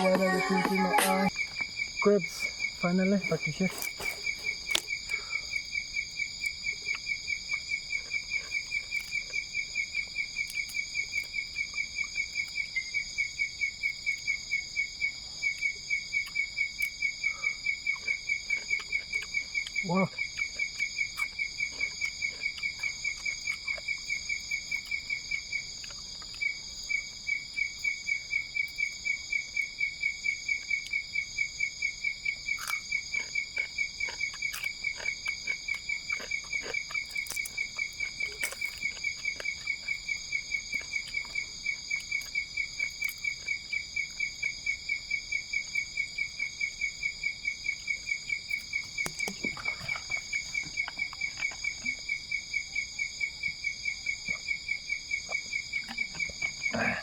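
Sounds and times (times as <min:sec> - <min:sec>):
high-pitched insect drone: 0:00.0 - 0:04.4
cricket chirping: 0:00.0 - 0:57.0.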